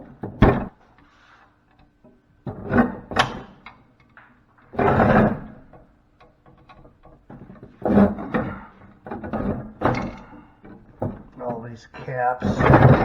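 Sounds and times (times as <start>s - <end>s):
tool scraping: 11.3s - 13.0s.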